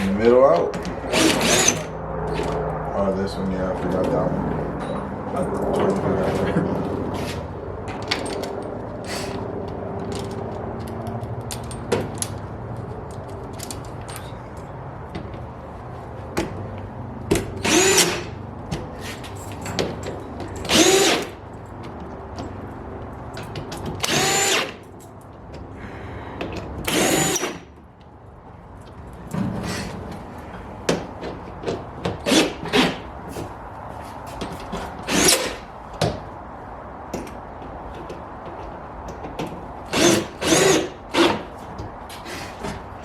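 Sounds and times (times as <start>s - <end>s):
cordless drill whirring: 17.6s - 18.3s, 20.7s - 21.3s, 24.0s - 24.8s, 26.9s - 27.6s, 40.0s - 41.4s.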